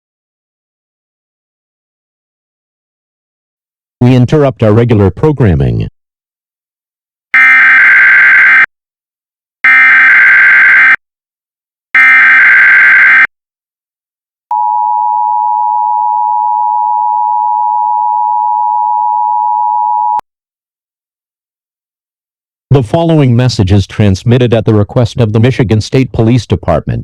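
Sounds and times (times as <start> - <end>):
buzzing data tone bursts: 9.7 - 11.0, 12.0 - 13.3.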